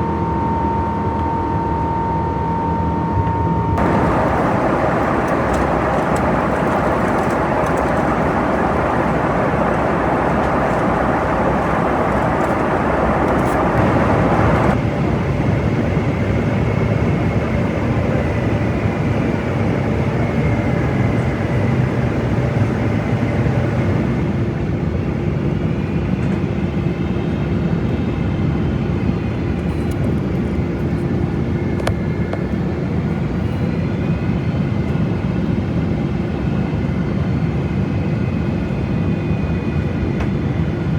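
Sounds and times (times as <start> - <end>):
faint wavering whine: 0.0 - 24.5
jet engine cabin roar: 0.0 - 40.9
steady hum: 3.8 - 24.6.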